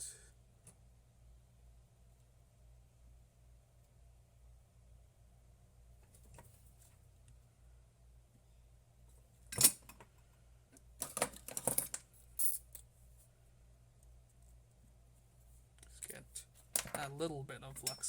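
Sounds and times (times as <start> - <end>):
tools clicking and clattering: 9.5 - 10.0, 11.0 - 12.8, 17.7 - 18.0.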